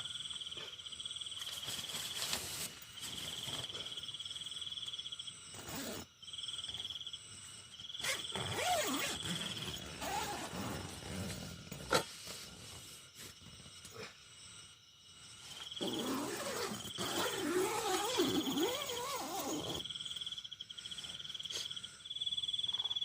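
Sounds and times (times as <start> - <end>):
insect trilling: 3.1 - 23.0.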